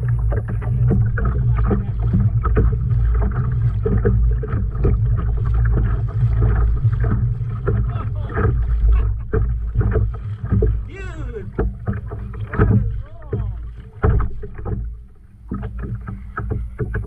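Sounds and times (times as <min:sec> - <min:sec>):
boat motor running: 0:00.0 - 0:17.0
short knocks: 0:07.1 - 0:17.0.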